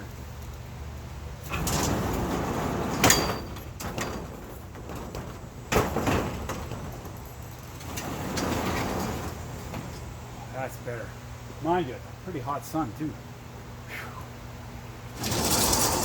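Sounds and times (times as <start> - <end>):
sliding door rumbling on track: 1.4 - 10.3, 15.1 - 16.0.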